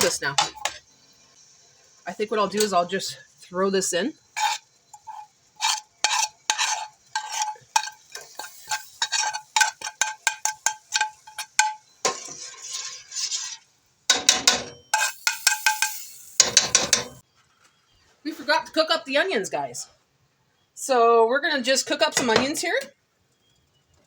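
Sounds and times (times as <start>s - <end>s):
metal spoon clinking against pot: 4.4s - 12.5s, 14.1s - 17.2s
scraping rustle: 12.1s - 13.7s.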